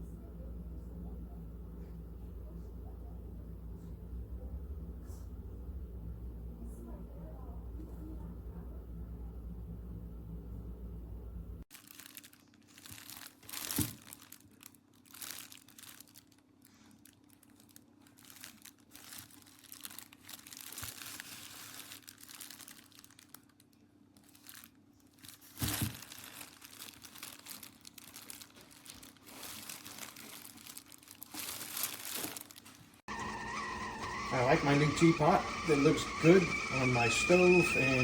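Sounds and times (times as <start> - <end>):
crinkling and rustling handling noise: 11.6 - 38.0.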